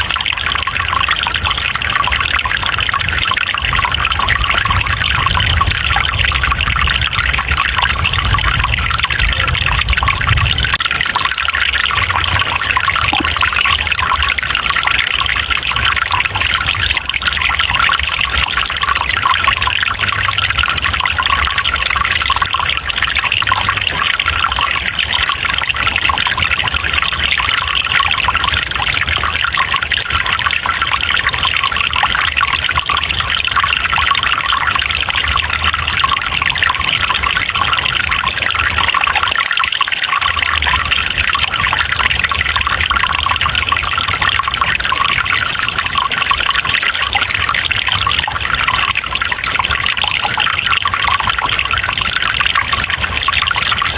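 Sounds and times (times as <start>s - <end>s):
stream water flowing: 0.0s - 53.9s
low rumble: 4.0s - 10.8s.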